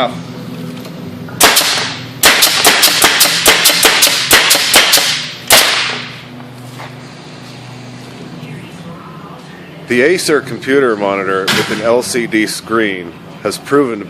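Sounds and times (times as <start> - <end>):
nail gun firing: 1.4 - 6.2.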